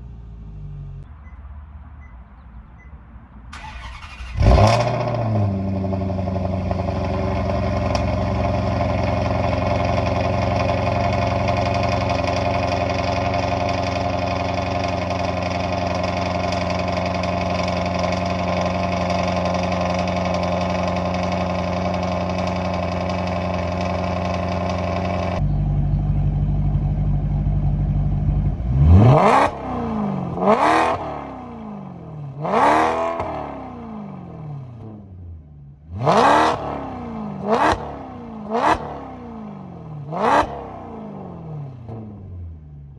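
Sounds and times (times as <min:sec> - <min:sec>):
car engine idling: 0:00.0 - 0:28.8
engine revving: 0:03.5 - 0:25.5, 0:28.1 - 0:35.1, 0:35.9 - 0:42.3.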